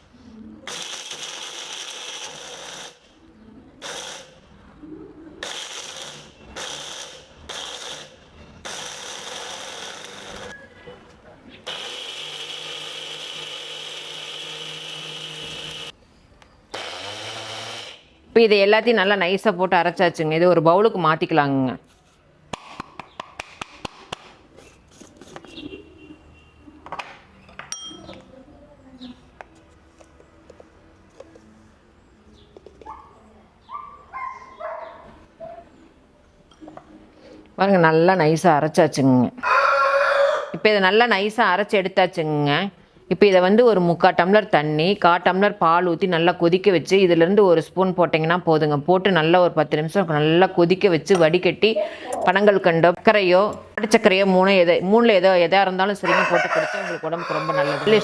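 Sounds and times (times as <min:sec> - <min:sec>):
ringing clink: 0:27.7 - 0:28.2.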